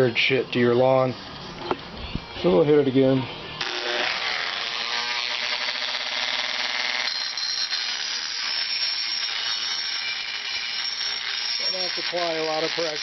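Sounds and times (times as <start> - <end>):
rotary tool grinding steel blade: 3.6 - 13.0.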